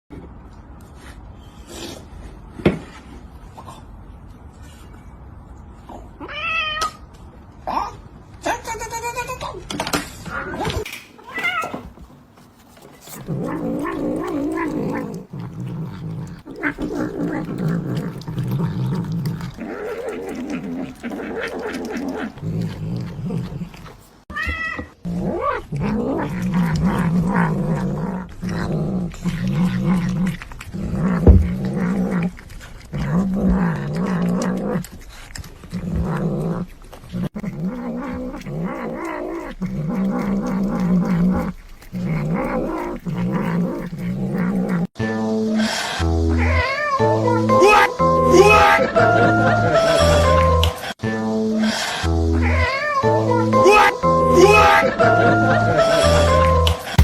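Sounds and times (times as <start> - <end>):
cats growling and caterwauling: 5.9 - 7.0, 10.1 - 12.1, 13.0 - 51.0, 51.6 - 57.0
cat high cry: 6.2 - 7.0, 11.2 - 11.9, 24.3 - 25.0, 46.4 - 50.1, 52.4 - 55.8.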